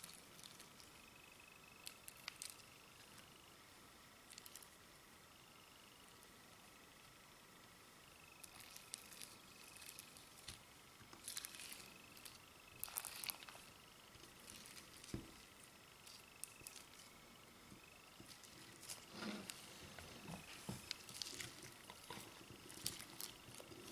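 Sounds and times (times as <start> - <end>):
faint wet clicks and crackles: 0.0 - 3.4, 4.2 - 4.8, 7.0 - 23.9
slime squeezed by hand: 11.2 - 13.6.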